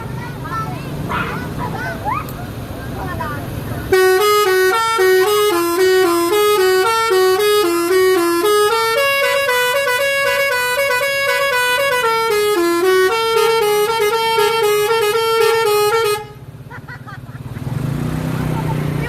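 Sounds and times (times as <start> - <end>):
bus musical horn playing a tune: 3.9 - 16.6.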